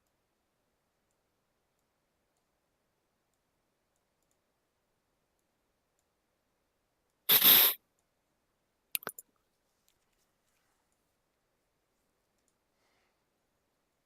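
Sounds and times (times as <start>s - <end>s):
quick clicks: 7.3s - 7.8s, 9.0s - 9.2s
sharp nasal sniff: 7.3s - 7.8s.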